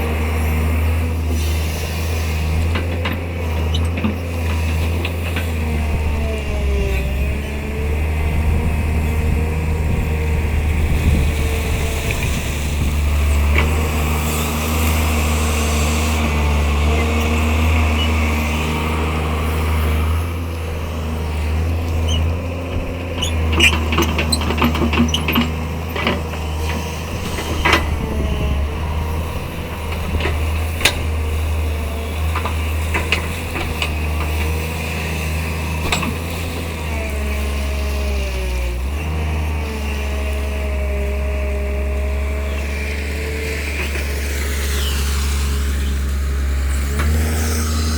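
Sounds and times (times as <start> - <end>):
excavator diesel engine rumble: 0.0 - 47.9.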